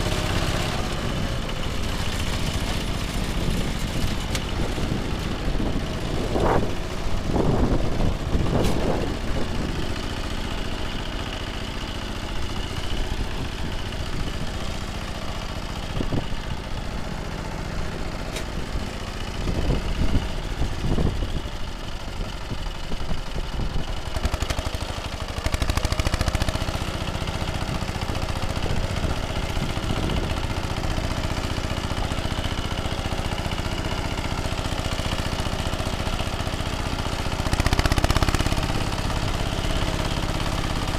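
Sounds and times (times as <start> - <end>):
rotary tiller in soil: 0.0 - 40.9
tractor engine running: 0.0 - 40.9.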